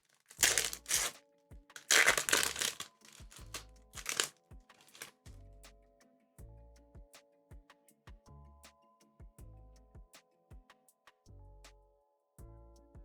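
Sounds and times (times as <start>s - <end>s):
foil wrapper crinkling: 0.0s - 1.1s, 1.8s - 5.1s
soft background music: 0.4s - 13.0s.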